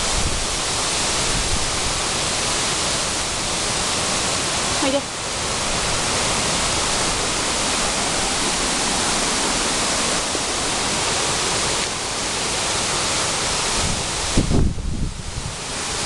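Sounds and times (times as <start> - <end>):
strong wind rushing: 0.0 - 2.2, 13.7 - 15.6
wind buffeting microphone: 0.0 - 2.5, 13.6 - 15.8.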